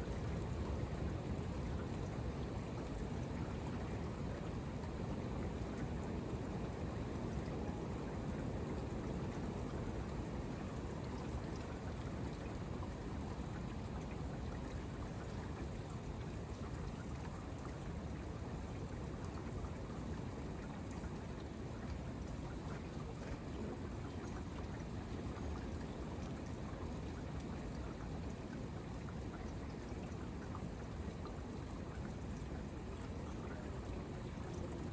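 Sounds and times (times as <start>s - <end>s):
patter of raindrops: 0.0s - 34.9s
steady rain: 32.8s - 34.9s.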